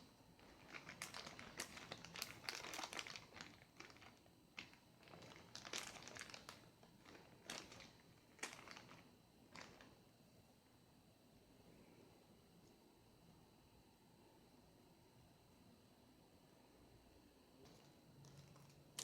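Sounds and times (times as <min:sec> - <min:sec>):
packaging crinkling: 0:00.4 - 0:10.0.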